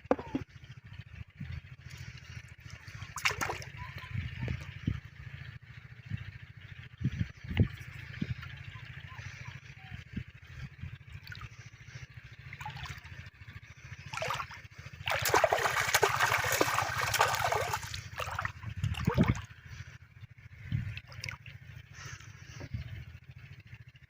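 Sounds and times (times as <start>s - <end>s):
low hum: 0.0s - 24.0s
river water splashing: 2.6s - 3.8s, 11.2s - 13.3s, 13.9s - 19.7s, 21.0s - 21.7s.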